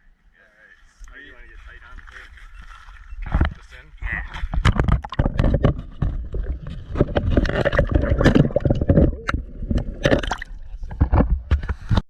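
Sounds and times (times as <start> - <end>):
water sloshing and gurgling: 1.6 - 12.0
knocks and handling clatter: 4.4 - 12.0.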